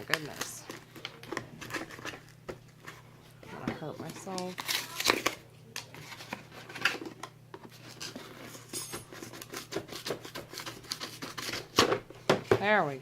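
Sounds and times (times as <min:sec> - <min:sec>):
knife scraping a sealed box: 0:09.2 - 0:11.8.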